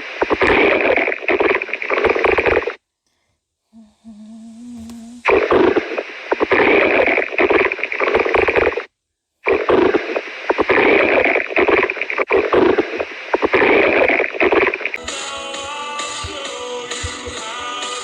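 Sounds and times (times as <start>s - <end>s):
stomach growling: 3.7s - 15.0s.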